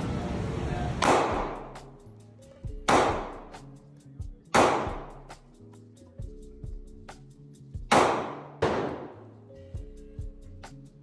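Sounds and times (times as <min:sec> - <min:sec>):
gunshots with ringing echo: 0:01.0 - 0:01.8, 0:02.9 - 0:03.6, 0:04.6 - 0:05.3, 0:07.9 - 0:09.4
background music with ticking beat: 0:01.0 - 0:11.0.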